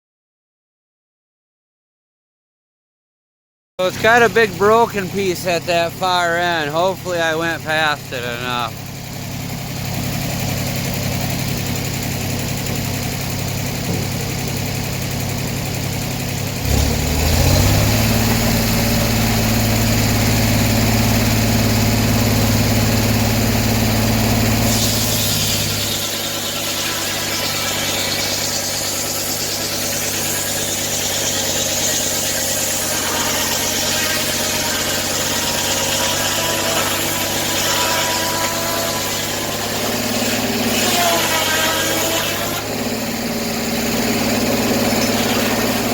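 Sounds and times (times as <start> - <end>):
sawmill engine running: 3.8 - 45.9
saw blade cutting log: 16.6 - 45.9.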